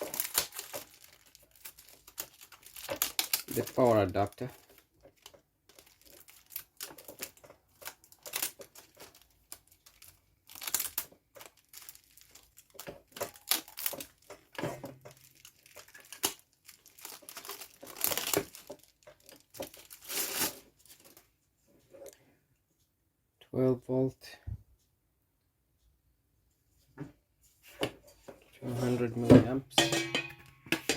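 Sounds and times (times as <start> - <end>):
packaging crinkling: 0.0 - 21.3.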